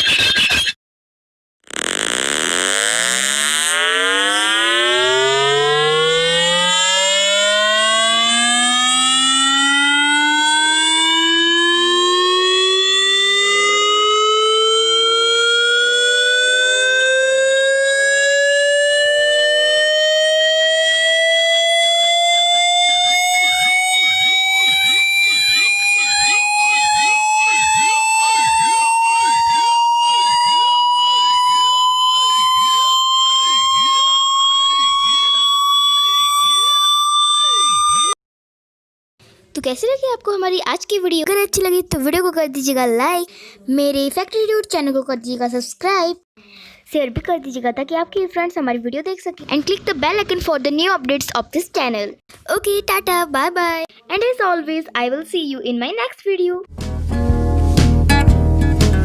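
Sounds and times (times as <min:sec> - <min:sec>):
tone sliding upward in pitch: 0:01.8 - 0:38.2.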